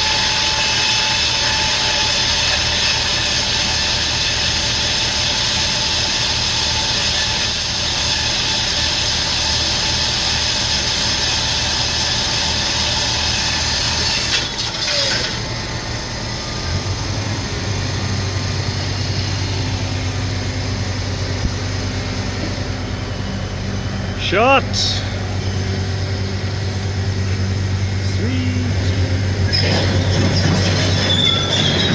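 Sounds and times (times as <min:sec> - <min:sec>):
wire saw cutting concrete: 0:00.0 - 0:15.6, 0:27.2 - 0:31.9
drive machinery drone: 0:13.9 - 0:31.9.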